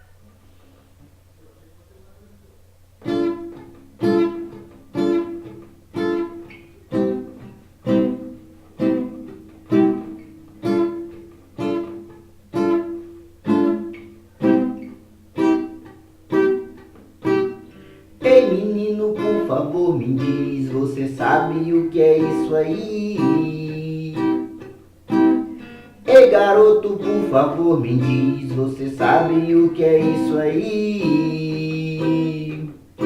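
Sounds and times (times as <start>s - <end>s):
guitar chords ringing: 3.0s - 33.0s.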